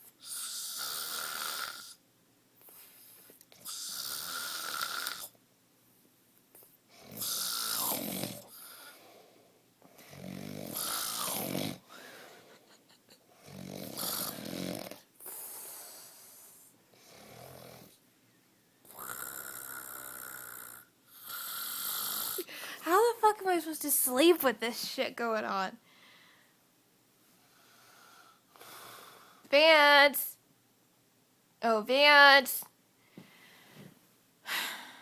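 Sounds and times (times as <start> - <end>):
man snoring: 0.2 - 2.0, 3.6 - 5.4, 7.0 - 9.0, 10.0 - 12.2, 13.4 - 16.4, 17.0 - 18.0, 18.9 - 22.5.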